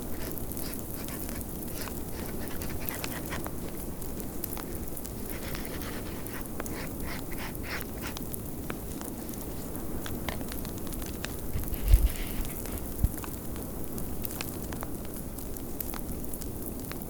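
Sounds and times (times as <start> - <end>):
rhythmic breathy puffs: 0.0 - 8.2
crackling fireplace: 0.0 - 17.0.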